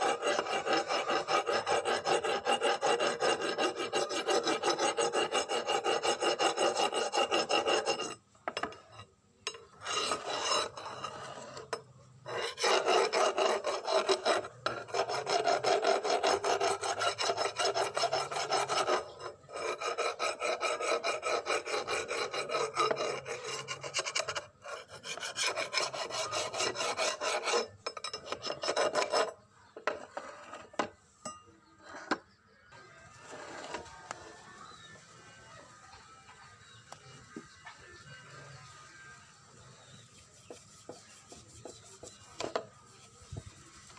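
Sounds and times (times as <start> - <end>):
abrasive rasping: 0.0 - 8.2, 9.7 - 29.4.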